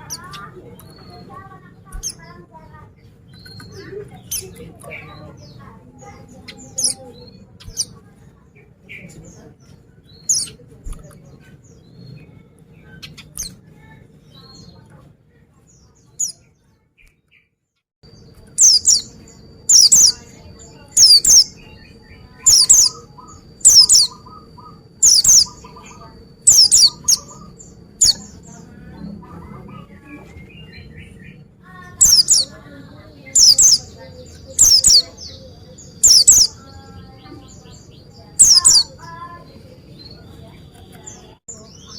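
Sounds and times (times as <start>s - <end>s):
bird chirping: 0.0s - 15.0s, 15.6s - 41.9s
sharp high bird calls: 10.2s - 10.6s, 18.6s - 28.6s, 32.0s - 32.6s, 33.2s - 36.6s, 37.7s - 39.3s.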